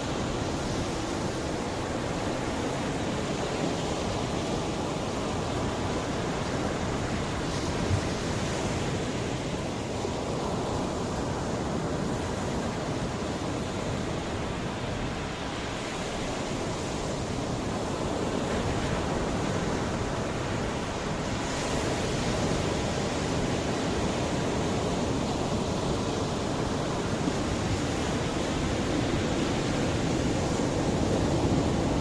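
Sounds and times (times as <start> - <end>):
sea waves washing onto shore: 0.0 - 32.0.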